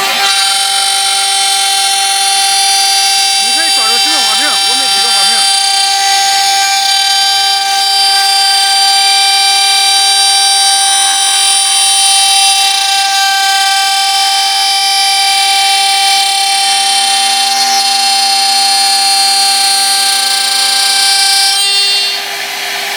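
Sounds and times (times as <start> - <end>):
wood lathe whining: 0.0 - 22.9.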